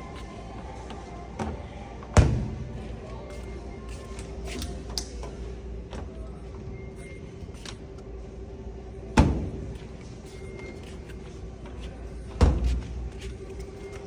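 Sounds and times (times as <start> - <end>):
steady low hum: 0.0 - 14.0
washing machine door slamming: 2.2 - 2.6.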